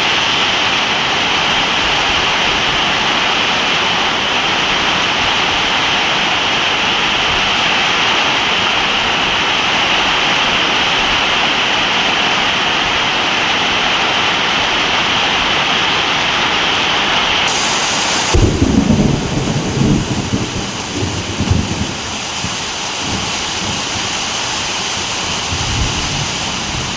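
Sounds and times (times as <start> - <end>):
heavy rain falling: 0.0 - 26.9
rolling rumble of thunder: 17.5 - 24.1.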